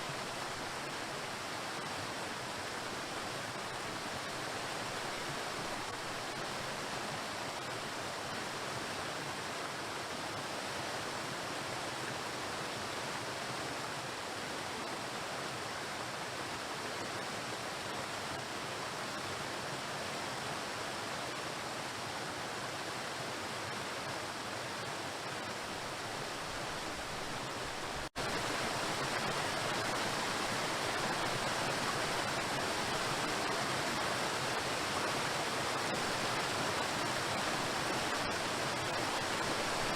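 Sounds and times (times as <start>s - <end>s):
waterfall rushing onto rocks: 25.6s - 39.9s.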